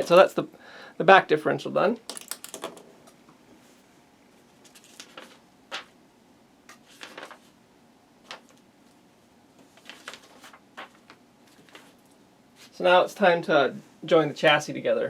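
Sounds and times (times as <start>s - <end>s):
plastic parts clicking and tapping: 2.1s - 2.8s.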